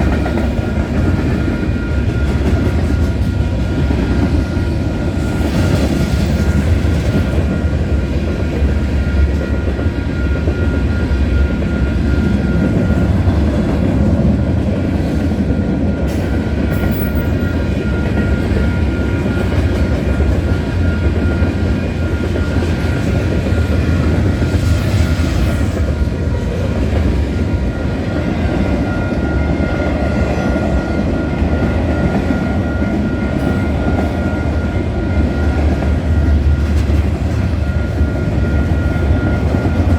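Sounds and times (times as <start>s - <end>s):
freight train wheels rumbling on rail: 0.0s - 39.9s
level-crossing bell dinging: 15.4s - 26.4s.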